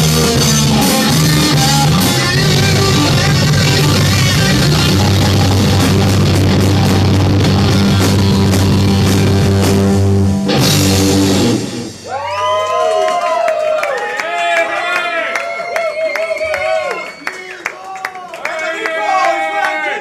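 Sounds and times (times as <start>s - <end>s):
hard rock music: 0.0s - 12.1s.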